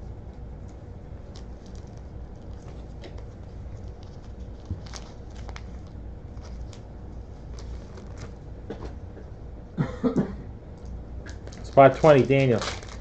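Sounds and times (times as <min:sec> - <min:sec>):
steady low hum: 0:00.0 - 0:13.0
cards and foil packs rustling: 0:01.2 - 0:08.4, 0:11.3 - 0:13.0.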